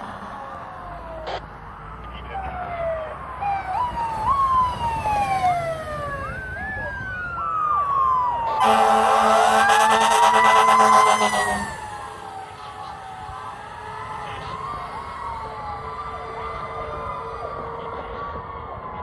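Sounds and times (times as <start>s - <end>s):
fire engine siren sweeping: 0.0s - 19.0s
siren climbing in pitch: 0.2s - 19.0s
loud horn blast: 8.5s - 11.8s.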